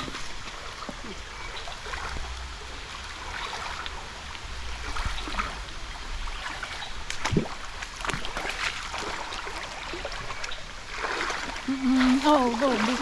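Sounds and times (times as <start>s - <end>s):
stream water flowing over rocks: 0.0s - 13.0s
splashes and knocks: 4.8s - 13.0s.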